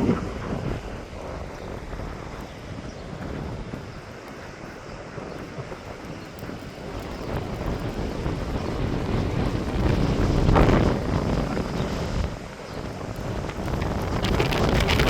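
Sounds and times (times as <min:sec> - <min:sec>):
gusty wind buffeting microphone: 0:00.0 - 0:15.0.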